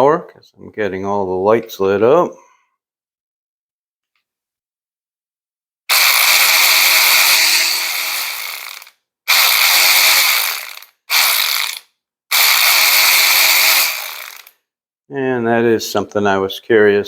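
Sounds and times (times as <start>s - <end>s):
cordless ratchet wrench running: 5.9s - 14.6s.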